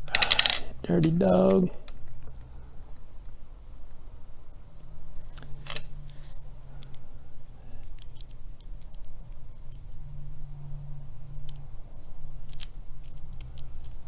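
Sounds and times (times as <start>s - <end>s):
lock parts clicking and scraping: 0.0s - 2.4s, 5.2s - 7.0s, 7.8s - 9.2s, 12.4s - 14.0s
steady low hum: 0.0s - 14.0s
ringing metallic clink: 0.1s - 1.1s.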